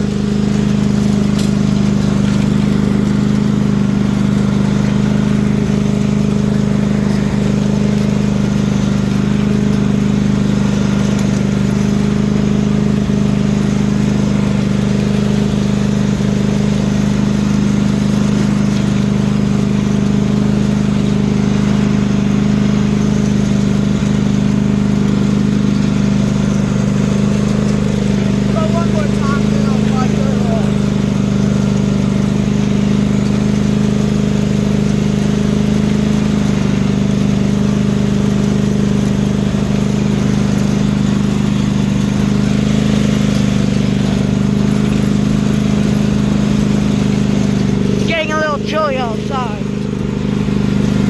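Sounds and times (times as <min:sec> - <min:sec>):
lawn mower engine running: 0:00.0 - 0:51.0.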